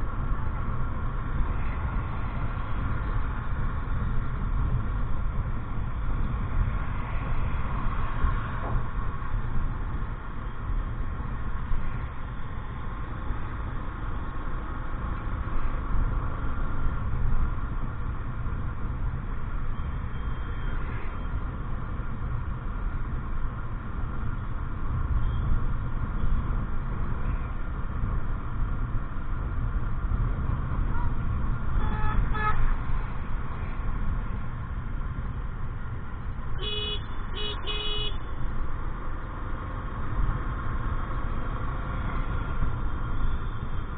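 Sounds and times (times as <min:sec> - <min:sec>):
road traffic rumble: 0:00.0 - 0:43.9
vehicle horn honking: 0:31.8 - 0:32.7, 0:36.6 - 0:38.2.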